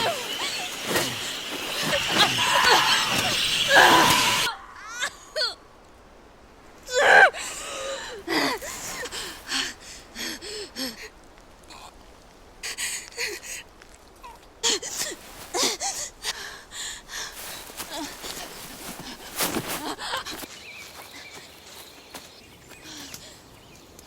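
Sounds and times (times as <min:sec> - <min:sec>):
dense noisy rush: 0:00.0 - 0:04.5
woman screaming: 0:01.8 - 0:05.5.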